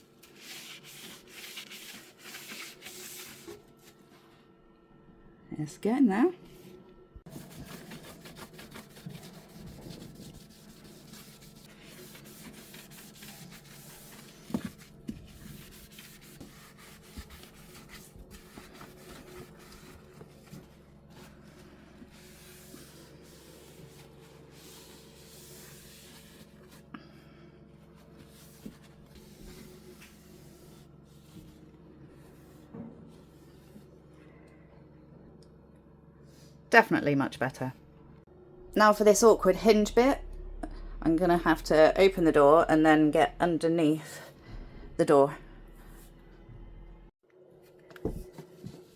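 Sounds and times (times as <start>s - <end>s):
sponge scrubbing stainless steel: 7.3s - 20.0s.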